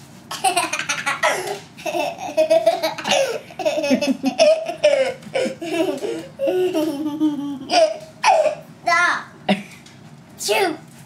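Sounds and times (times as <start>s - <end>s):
child laughing hard: 0.3s - 8.6s.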